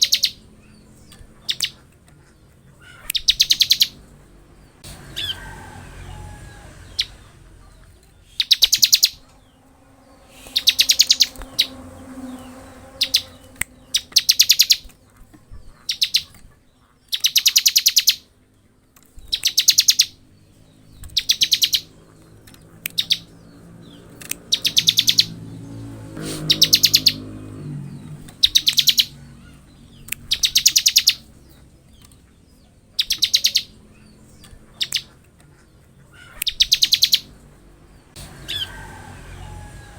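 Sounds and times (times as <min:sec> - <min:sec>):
bird sharp chirps: 0:00.0 - 0:18.3, 0:19.2 - 0:22.1, 0:22.8 - 0:37.4
bird buzzing trills: 0:08.3 - 0:15.0.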